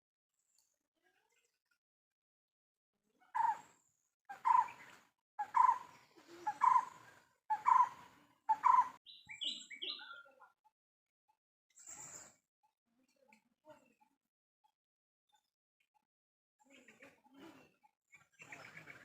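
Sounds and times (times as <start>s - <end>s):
bird calling: 3.4s - 3.6s, 4.3s - 10.2s.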